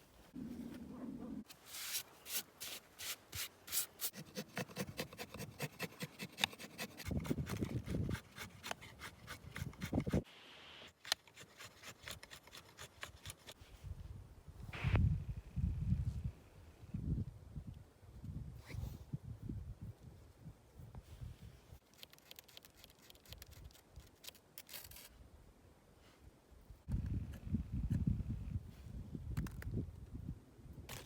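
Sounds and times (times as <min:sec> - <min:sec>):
hand tool rasping on wood: 0:04.0 - 0:10.2.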